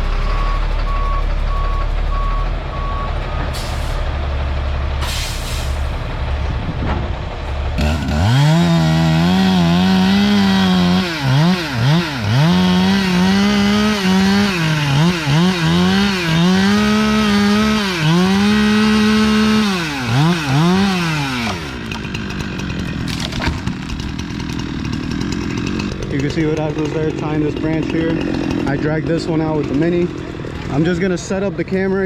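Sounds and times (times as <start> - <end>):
chainsaw cutting: 7.5 - 31.4.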